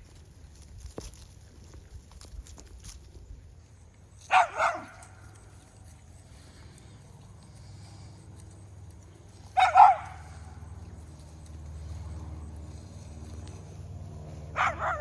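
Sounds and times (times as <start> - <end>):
dog barking: 4.3 - 5.2, 9.6 - 10.5, 14.5 - 15.0.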